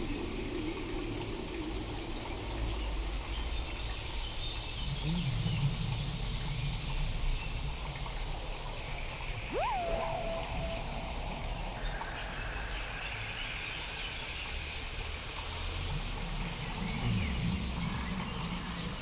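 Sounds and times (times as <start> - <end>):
deeper wobbling tone: 9.5 - 12.6
warbling low tone: 9.5 - 13.0.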